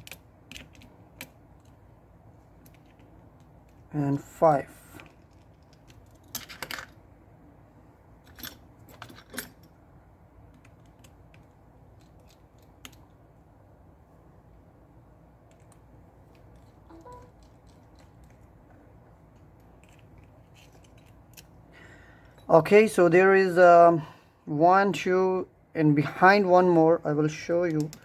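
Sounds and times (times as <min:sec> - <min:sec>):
small tools clicking and tapping: 0:00.0 - 0:01.8, 0:02.6 - 0:03.8, 0:15.5 - 0:21.5.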